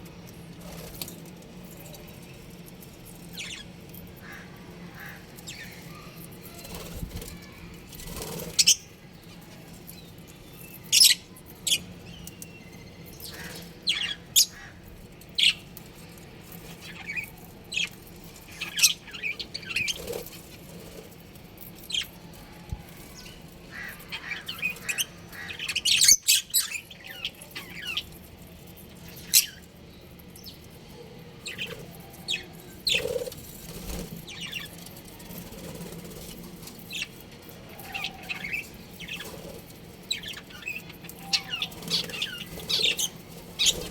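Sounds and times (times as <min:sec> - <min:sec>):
budgerigars chirping: 0:40.1 - 0:43.9.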